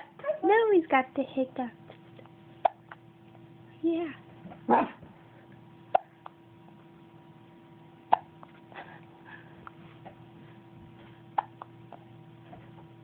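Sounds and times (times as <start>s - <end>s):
faint steady hum: 0.0s - 13.0s
person hiccuping: 2.6s - 3.0s, 5.9s - 6.3s, 8.1s - 8.4s, 11.4s - 11.8s.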